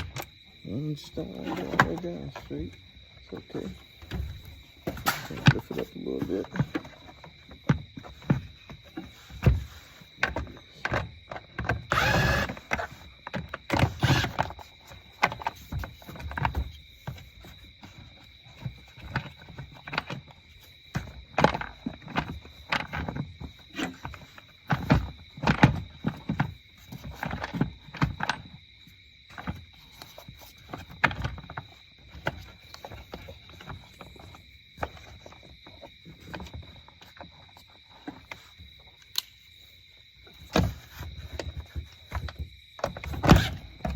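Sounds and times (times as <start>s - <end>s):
plastic parts knocking and clattering: 0.0s - 39.0s, 40.2s - 43.9s.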